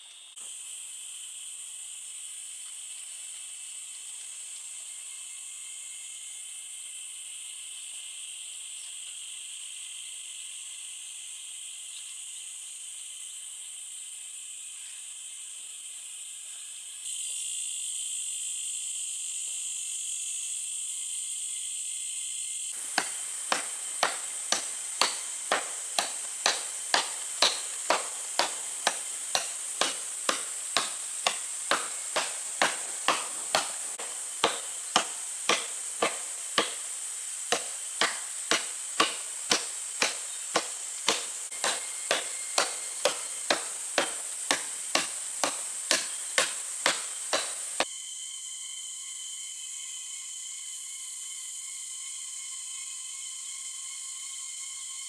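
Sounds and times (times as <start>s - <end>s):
blade chopping wood: 22.8s - 47.8s
insects shrilling: 22.8s - 47.8s.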